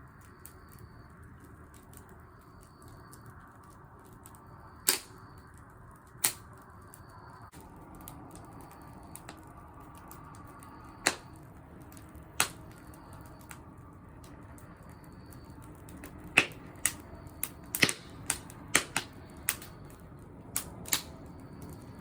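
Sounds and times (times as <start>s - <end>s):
wood fire crackling: 0.0s - 22.0s
fire sharp loud pops: 4.8s - 5.2s, 10.9s - 13.6s, 14.9s - 21.9s.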